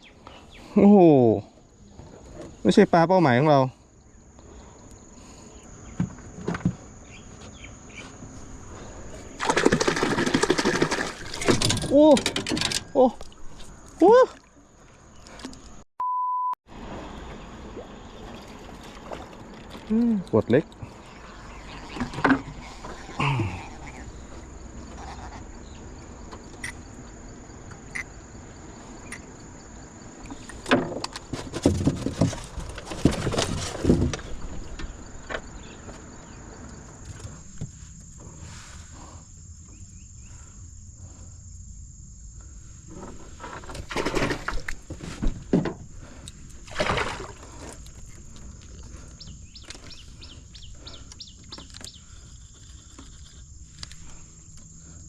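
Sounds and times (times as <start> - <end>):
crickets trilling: 0.0 - 15.8, 16.7 - 55.0
rustling and clattering: 9.5 - 12.9, 30.4 - 36.1, 42.9 - 46.2.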